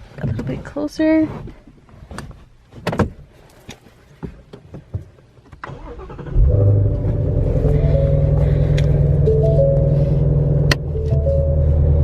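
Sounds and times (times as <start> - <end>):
car starter cranking: 5.6 - 12.0
car engine idling: 5.8 - 12.0.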